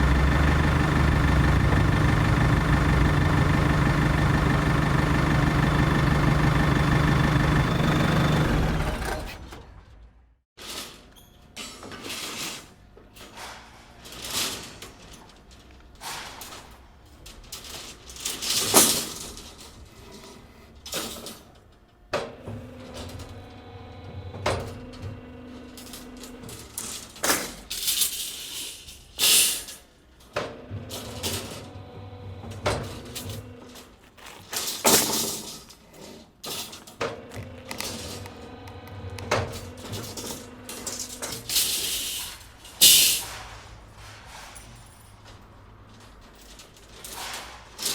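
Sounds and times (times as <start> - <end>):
steady machine hum: 0.0 - 9.2, 37.3 - 41.4
metal clanks knocks and scrapes: 10.7 - 21.4, 34.1 - 47.9.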